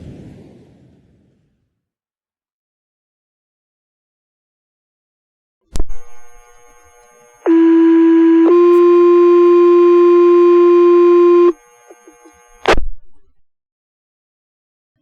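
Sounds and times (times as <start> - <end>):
radio static burst: 5.8 - 6.9, 7.5 - 12.0
two-tone radio page: 7.4 - 11.5.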